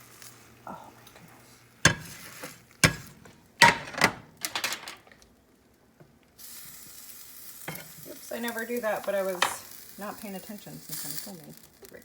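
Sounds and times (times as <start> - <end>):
frying sizzle: 0.0 - 12.0
cookware clattering: 1.9 - 5.2, 7.7 - 8.0, 9.0 - 9.6.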